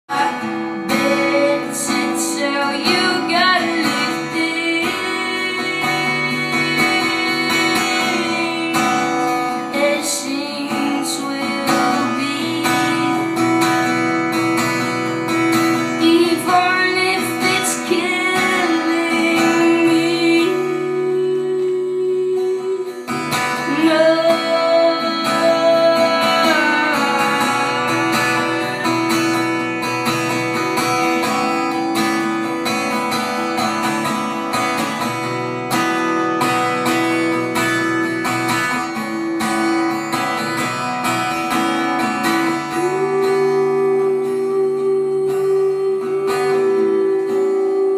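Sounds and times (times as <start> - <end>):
woman singing: 0.0 - 47.9
strummed guitar: 0.1 - 47.9.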